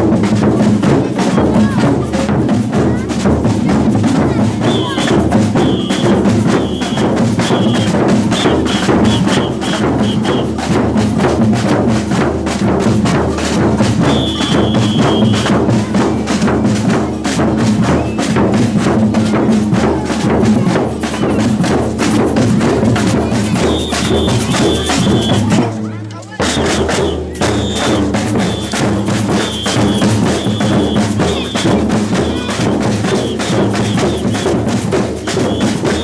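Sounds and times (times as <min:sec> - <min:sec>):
samba percussion band: 0:00.0 - 0:36.0
samba whistle blasts: 0:04.6 - 0:10.8, 0:14.0 - 0:16.0, 0:17.8 - 0:18.9, 0:23.4 - 0:25.6, 0:26.4 - 0:36.0.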